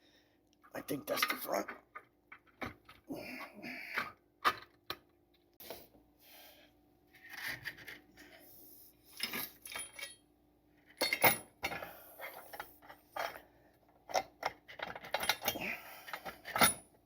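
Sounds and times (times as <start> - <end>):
metal tools clinking and rattling: 9.2 - 10.2, 11.0 - 11.8, 14.8 - 16.8.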